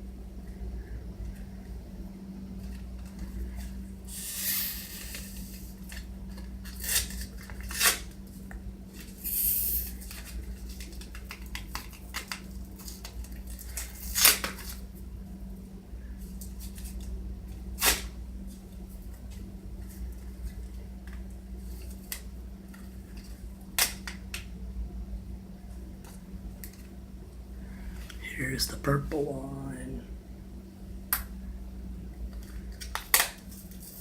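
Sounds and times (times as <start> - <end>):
steady low hum: 0.0 - 6.6, 24.5 - 32.8.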